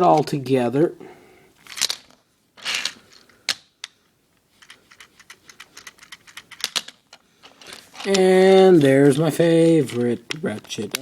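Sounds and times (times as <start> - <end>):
plastic parts clicking: 4.6 - 11.0.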